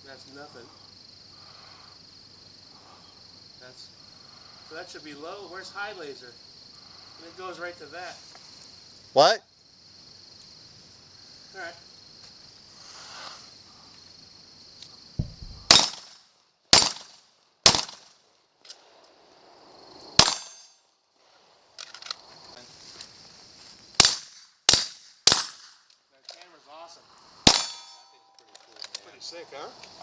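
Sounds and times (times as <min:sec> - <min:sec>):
crickets chirring: 0:00.0 - 0:30.0
gunshots: 0:15.2 - 0:16.1, 0:27.5 - 0:27.8.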